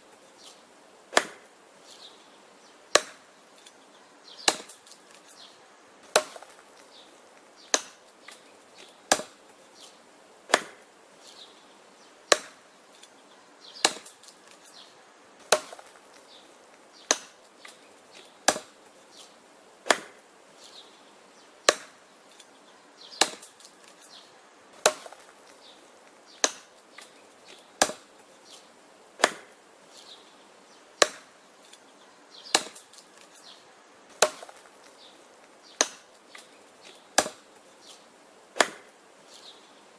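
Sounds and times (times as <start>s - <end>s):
axe chopping wood: 1.1s - 1.5s, 2.9s - 3.3s, 4.4s - 5.2s, 6.0s - 6.9s, 7.6s - 9.4s, 10.5s - 10.9s, 12.3s - 12.6s, 13.8s - 14.8s, 15.4s - 16.2s, 17.0s - 18.8s, 19.8s - 20.2s, 21.6s - 22.0s, 23.2s - 24.0s, 24.8s - 28.2s, 29.2s - 29.6s, 31.0s - 31.3s, 32.5s - 33.3s, 34.1s - 35.0s, 35.7s - 37.5s, 38.6s - 38.9s.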